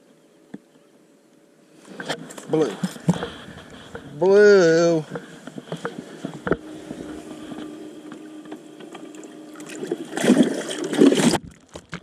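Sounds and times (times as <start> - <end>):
faint steady hum: 0.0 - 12.0
water splashing: 8.8 - 12.0.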